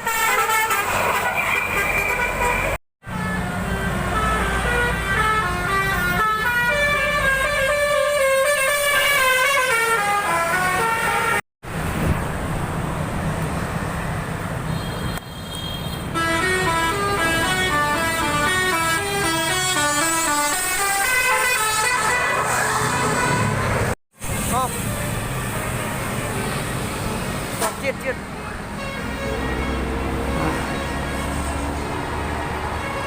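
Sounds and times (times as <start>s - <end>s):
bus engine rumble: 0.0s - 9.2s, 9.9s - 15.2s, 16.0s - 33.0s
musical air horns melody: 0.0s - 11.4s, 16.0s - 26.3s, 28.8s - 31.9s.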